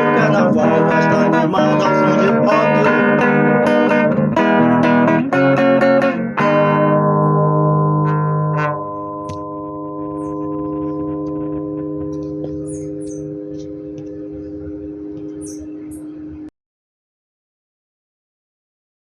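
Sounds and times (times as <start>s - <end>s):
rock band playing: 0.0s - 14.0s
strummed guitar chords: 0.0s - 16.5s.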